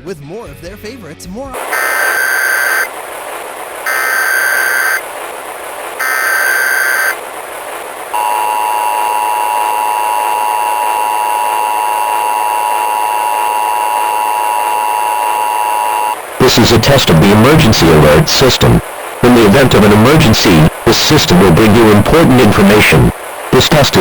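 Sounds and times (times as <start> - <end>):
warbling data tones: 1.6 - 18.6
static hiss: 1.6 - 24.0
two-tone attention signal: 1.7 - 2.9, 3.9 - 5.0, 6.0 - 7.2, 8.2 - 16.2.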